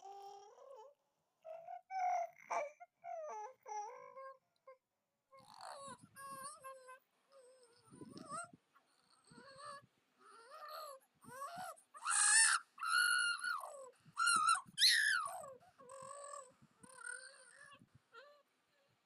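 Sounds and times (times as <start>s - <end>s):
infant squealing and cooing: 1.5s - 4.4s, 9.1s - 18.4s.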